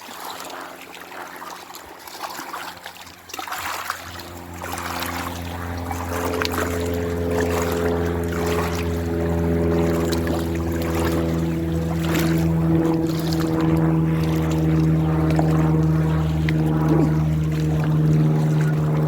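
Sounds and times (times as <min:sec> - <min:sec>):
motor engine droning: 0:03.8 - 0:19.0.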